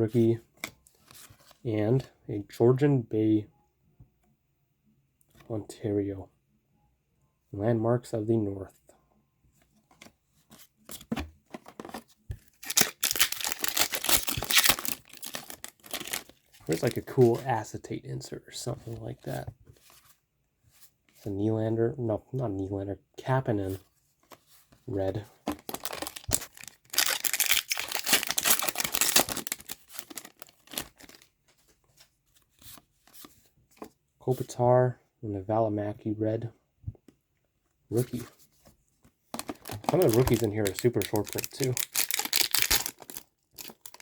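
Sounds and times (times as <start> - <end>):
cards tapping and rustling: 10.0 - 17.4, 24.2 - 31.3, 39.3 - 44.0
card pack wrapper crinkling: 11.7 - 17.4, 25.4 - 31.3, 39.4 - 44.0.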